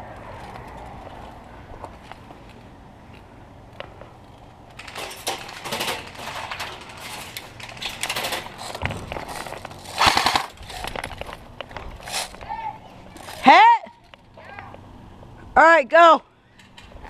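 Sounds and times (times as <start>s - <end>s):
airsoft guns firing: 10.0s - 10.6s.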